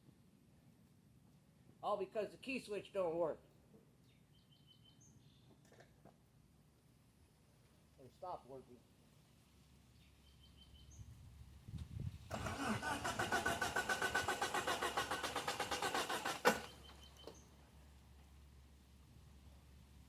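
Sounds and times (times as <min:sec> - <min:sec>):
starter motor cranking engine: 0:12.3 - 0:17.4.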